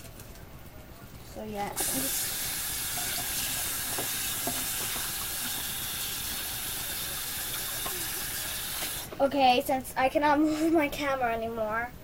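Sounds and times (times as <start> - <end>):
steady hiss: 1.7 - 10.9.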